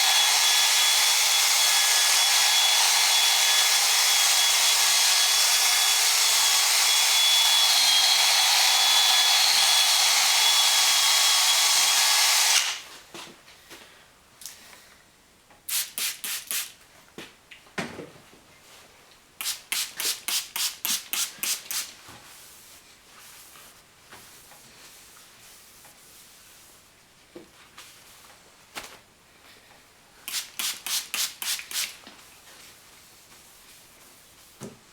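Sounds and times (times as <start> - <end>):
power sander whining: 0.0 - 12.9
short hissing strokes: 15.7 - 16.7, 19.4 - 21.9, 30.3 - 32.0.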